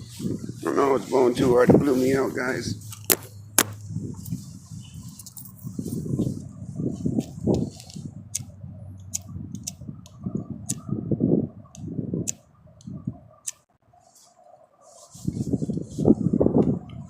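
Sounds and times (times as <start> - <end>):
wind rumbling on microphone: 0.0 - 13.7, 14.6 - 17.0.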